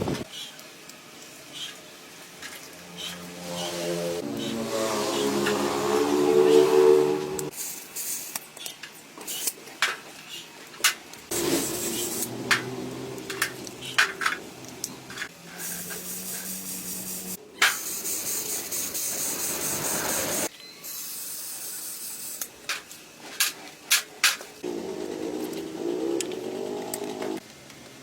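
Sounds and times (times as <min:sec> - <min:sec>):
spray gun hissing: 0:11.3 - 0:12.4, 0:15.6 - 0:22.4.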